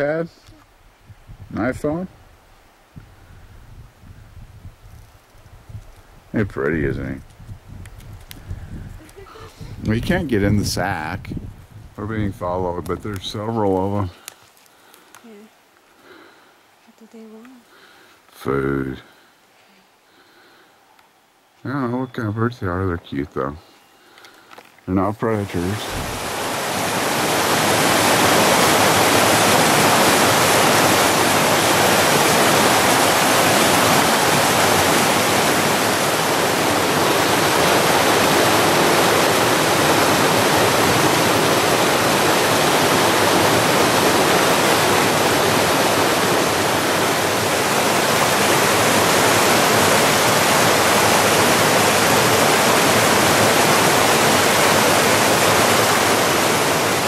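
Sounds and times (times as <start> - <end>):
rushing water: 24.9 - 57.0.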